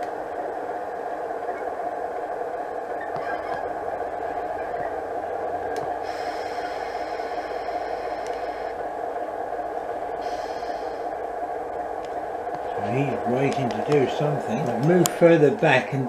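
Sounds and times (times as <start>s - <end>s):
simulated diesel engine idling: 3.3s - 16.0s.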